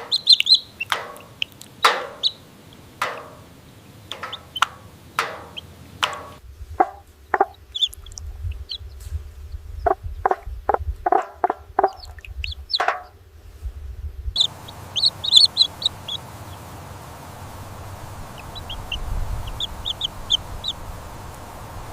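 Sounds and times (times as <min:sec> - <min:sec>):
chicken clucking: 0:00.0 - 0:02.4, 0:04.1 - 0:08.9, 0:09.8 - 0:13.1, 0:14.4 - 0:17.1, 0:17.7 - 0:21.4
high bird chirps: 0:00.0 - 0:02.5, 0:04.1 - 0:12.9, 0:14.4 - 0:21.9
outdoor hiss: 0:00.0 - 0:09.8, 0:12.1 - 0:21.9.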